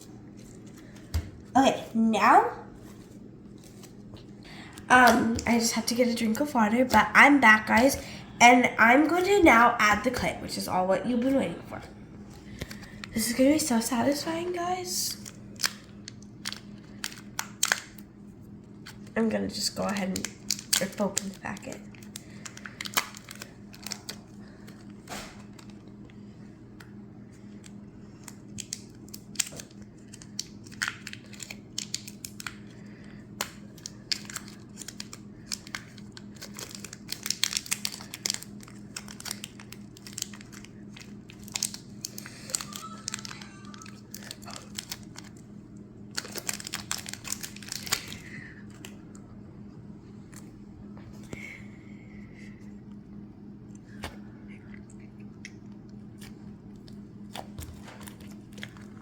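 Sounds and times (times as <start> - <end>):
faint low hum: 0.0 - 59.0
plastic packet crinkling: 12.4 - 18.1, 18.7 - 26.0, 27.5 - 45.4, 46.1 - 48.9, 57.3 - 59.0.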